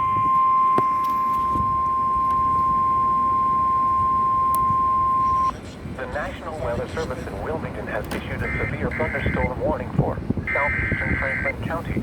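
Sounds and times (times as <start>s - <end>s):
steady warning alarm tone: 0.0s - 5.5s, 8.4s - 9.6s
faint radio static: 6.0s - 12.0s.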